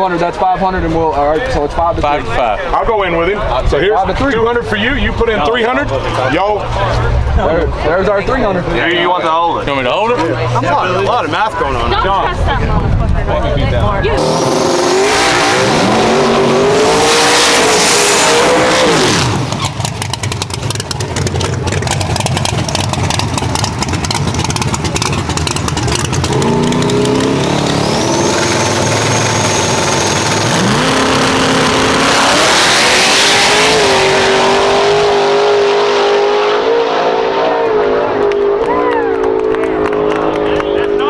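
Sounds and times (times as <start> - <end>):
race car engines revving: 13.8 - 41.0
rapid engine crackling: 14.0 - 35.2.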